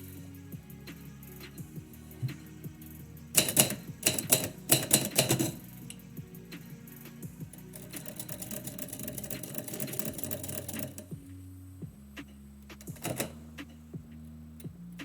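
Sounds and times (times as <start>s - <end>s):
manual typewriter typing: 3.4s - 6.0s, 7.4s - 11.2s, 12.8s - 13.4s.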